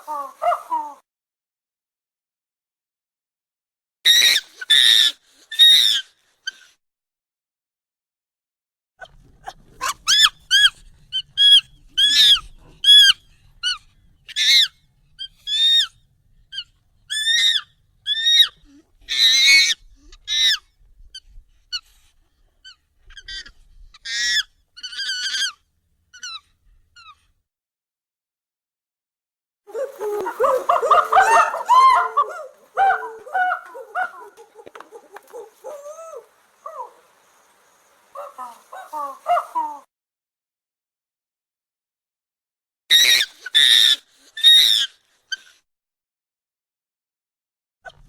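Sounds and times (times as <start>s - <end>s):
monkey high-pitched calls: 4.1s - 6.7s, 9.8s - 20.6s, 22.6s - 26.4s, 29.7s - 37.4s, 38.1s - 39.9s, 42.9s - 45.6s.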